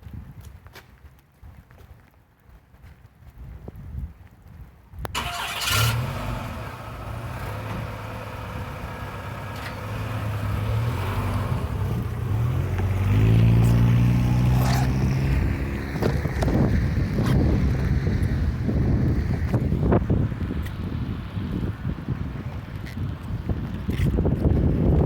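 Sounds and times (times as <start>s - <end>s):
vehicle engine revving: 5.2s - 21.3s.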